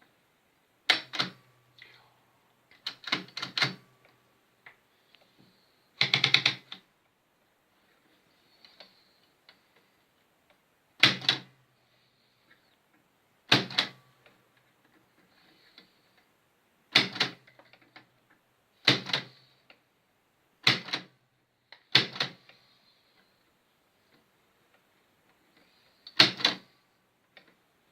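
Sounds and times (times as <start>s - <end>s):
typewriter clacks: 2.8s - 3.8s, 6.0s - 6.8s, 16.9s - 17.4s, 18.8s - 19.3s, 20.6s - 21.1s.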